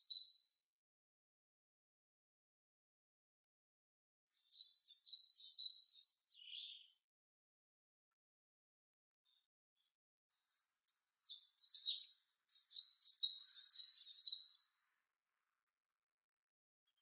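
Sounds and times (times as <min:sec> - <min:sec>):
bird high calls: 0:11.2 - 0:14.6.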